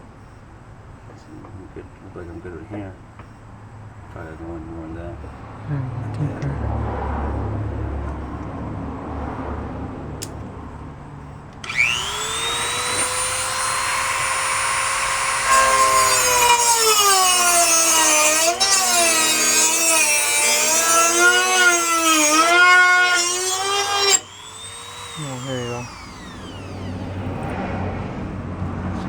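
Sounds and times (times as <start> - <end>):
power tool whining while cutting: 11.6 - 27.5.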